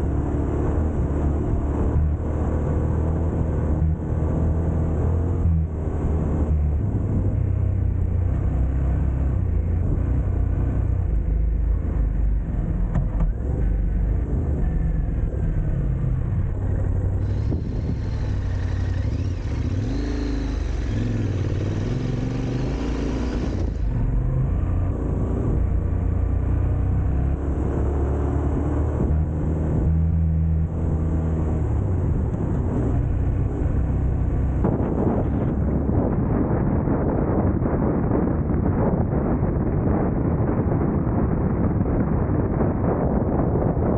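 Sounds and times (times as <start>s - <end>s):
motorcycle engine revving: 13.0s - 37.4s.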